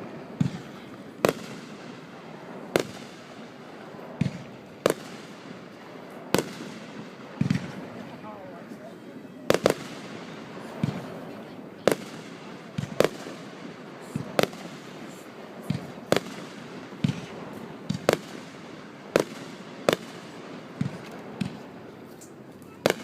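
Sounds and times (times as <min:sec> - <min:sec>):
fireworks banging: 0:00.0 - 0:23.0.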